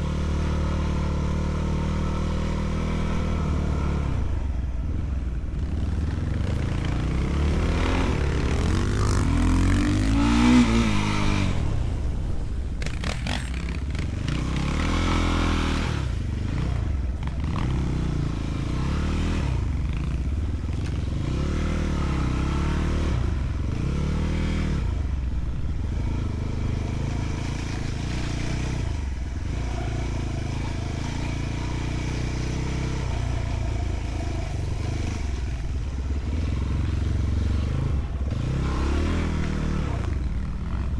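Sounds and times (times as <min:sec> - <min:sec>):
motorcycle engine revving: 0:00.0 - 0:40.9
clattering and scraping from bike: 0:12.8 - 0:14.8.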